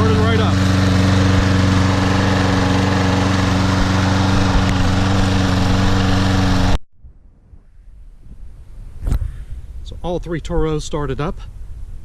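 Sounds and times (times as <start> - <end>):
lawn mower engine running: 0.0 - 6.8.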